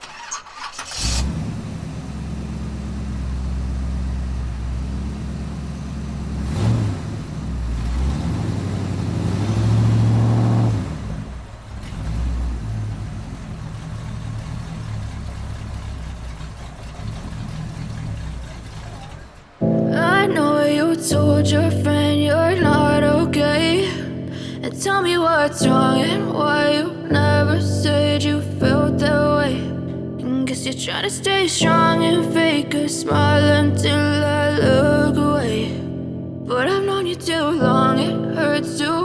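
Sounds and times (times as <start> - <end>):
vehicle engine revving: 0.7 - 19.6.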